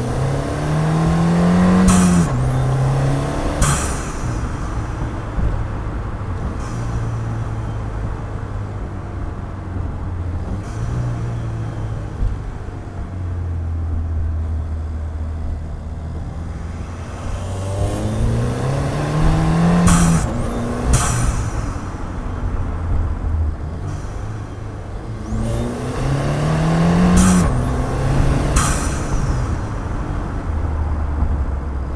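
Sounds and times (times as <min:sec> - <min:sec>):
car engine revving: 0:00.0 - 0:31.9
short rushes of noise: 0:16.9 - 0:23.2.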